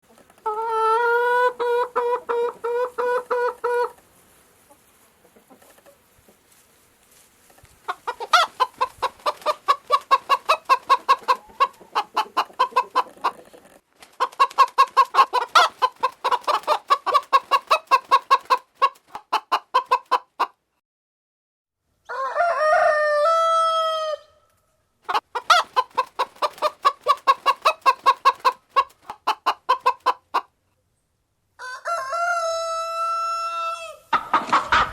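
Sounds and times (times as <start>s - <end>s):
chickens clucking: 0.1s - 6.6s, 7.6s - 20.6s, 25.0s - 30.6s, 33.8s - 34.9s
rooster crowing: 22.1s - 24.4s, 31.6s - 34.1s.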